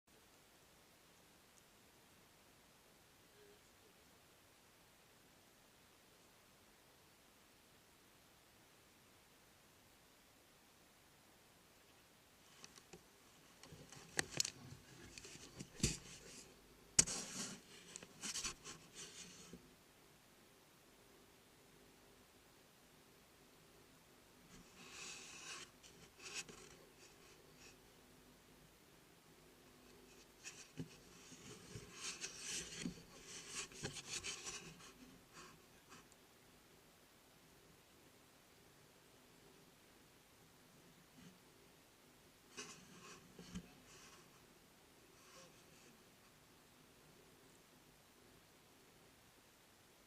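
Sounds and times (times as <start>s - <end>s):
faint scraping and rubbing: 12.4s - 19.7s, 24.5s - 28.0s, 29.6s - 36.2s, 42.5s - 46.4s.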